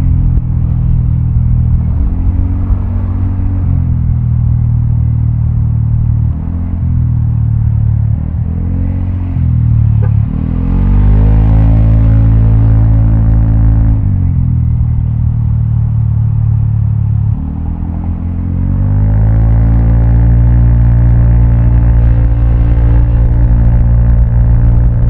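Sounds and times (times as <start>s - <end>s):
scooter engine revving: 19.7s - 25.0s.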